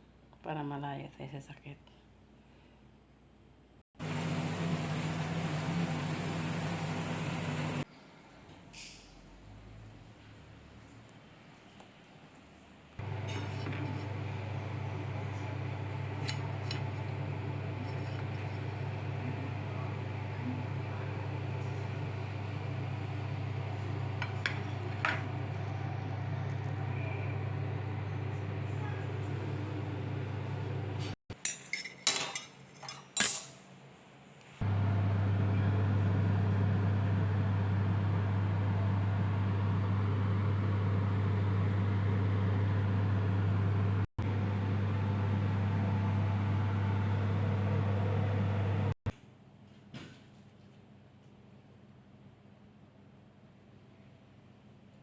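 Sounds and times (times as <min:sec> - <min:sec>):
dishes and cutlery clinking: 0:13.1 - 0:14.3, 0:15.9 - 0:18.8, 0:24.2 - 0:25.3, 0:31.3 - 0:33.6.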